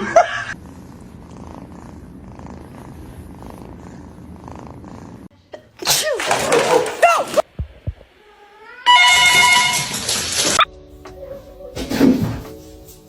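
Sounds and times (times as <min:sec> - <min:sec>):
cat purring: 0:00.5 - 0:05.3
cat meowing: 0:08.2 - 0:09.6.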